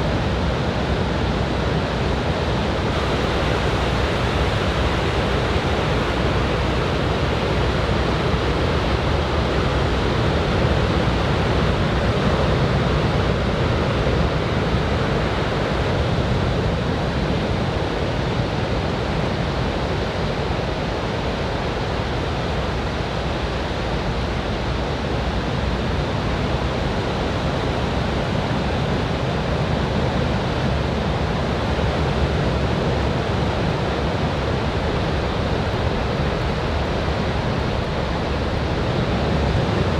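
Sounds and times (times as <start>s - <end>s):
waves breaking on beach: 2.9s - 11.8s.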